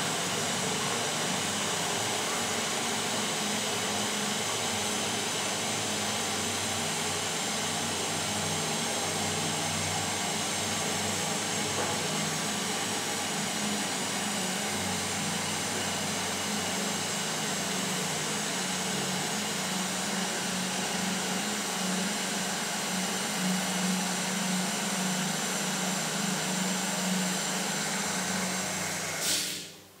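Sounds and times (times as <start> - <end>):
toilet cistern refilling hiss: 25.5 - 29.8.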